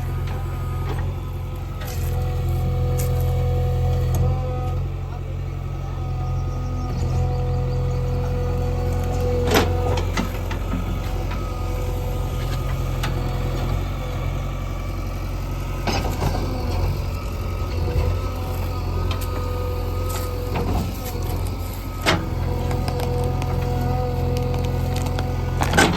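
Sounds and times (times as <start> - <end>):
diesel engine running with whine: 0.0 - 25.9.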